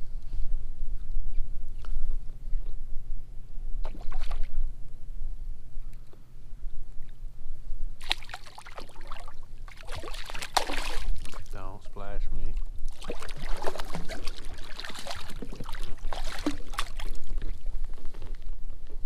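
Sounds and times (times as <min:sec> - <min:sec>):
steady low rumble: 0:00.0 - 0:19.0
fish splashing at surface: 0:08.0 - 0:11.5, 0:12.9 - 0:17.6.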